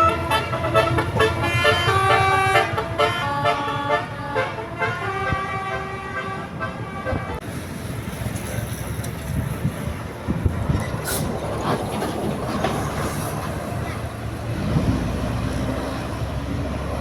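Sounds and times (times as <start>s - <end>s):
bus horn playing a tune: 0.0s - 7.4s
bus engine rumble: 0.0s - 17.0s.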